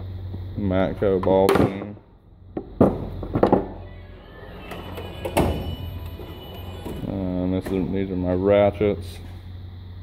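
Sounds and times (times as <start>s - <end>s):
metal drawer rolling on slides: 3.8s - 7.9s.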